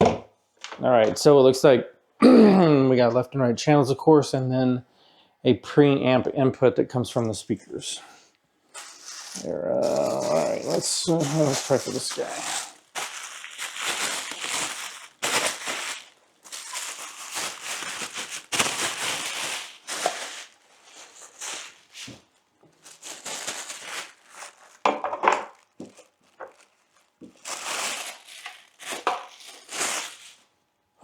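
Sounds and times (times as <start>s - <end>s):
plastic packaging crinkling: 8.7s - 30.5s.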